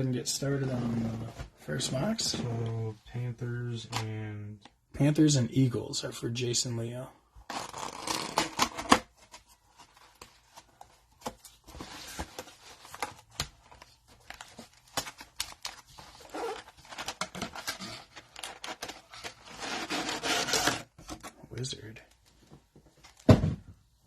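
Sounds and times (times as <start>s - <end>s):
plastic wrapping tearing and crinkling: 15.0s - 20.9s.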